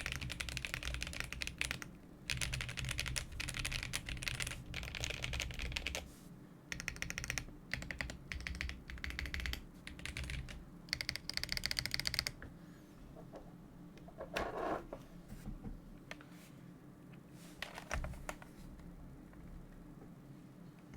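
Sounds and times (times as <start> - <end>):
mechanical keyboard typing: 0.0 - 6.0, 6.7 - 12.4.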